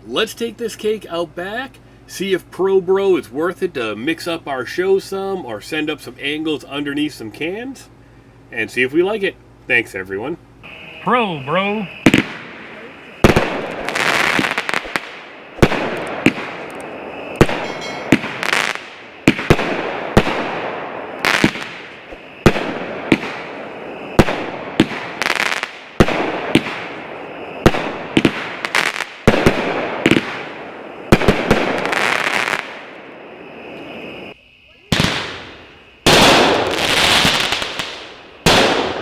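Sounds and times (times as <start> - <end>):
firework launch reports: 8.5 - 39.0
firework hissing and crackling: 11.1 - 39.0.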